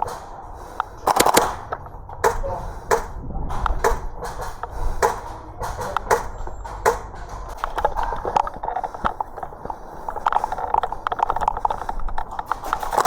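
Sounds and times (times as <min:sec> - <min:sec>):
low rumble: 0:00.0 - 0:09.6
sharp knocks and clacks: 0:00.0 - 0:13.0.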